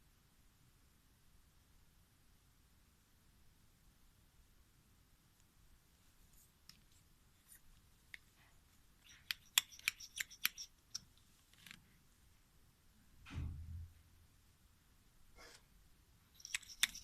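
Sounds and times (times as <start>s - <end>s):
sharp crisp clicks and snaps: 9.0s - 11.8s, 16.4s - 17.0s.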